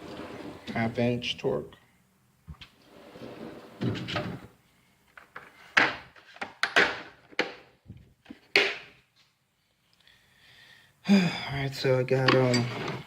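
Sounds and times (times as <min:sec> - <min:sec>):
metal drawer sliding on runners: 0:00.0 - 0:00.8, 0:12.5 - 0:13.0.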